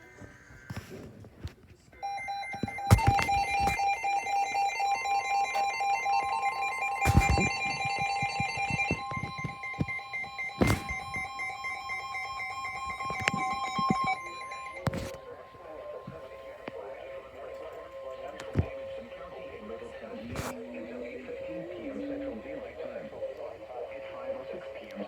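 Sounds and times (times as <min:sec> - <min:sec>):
steady electronic tone: 0:02.0 - 0:21.2
pulsing high beeping: 0:02.0 - 0:23.0.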